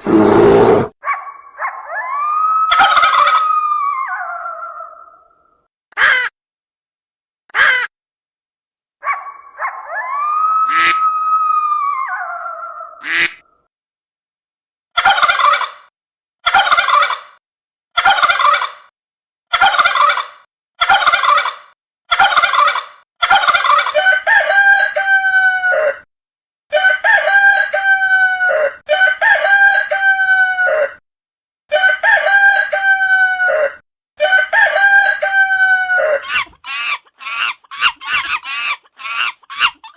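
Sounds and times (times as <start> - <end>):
rooster crowing: 9.6 - 13.0, 24.0 - 26.0, 26.7 - 31.0, 31.7 - 36.3
chickens clucking: 19.5 - 24.2.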